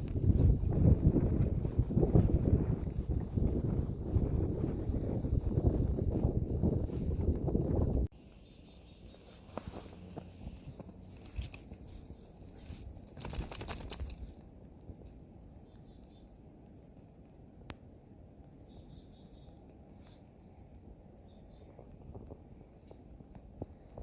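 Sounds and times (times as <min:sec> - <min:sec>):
footsteps crunching through snow: 0:00.0 - 0:08.1, 0:09.0 - 0:14.2.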